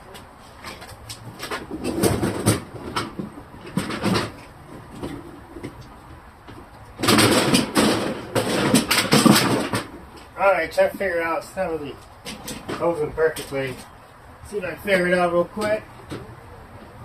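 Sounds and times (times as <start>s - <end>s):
plastic parts clattering and scraping: 0.6s - 5.9s, 7.0s - 10.0s, 12.2s - 13.9s.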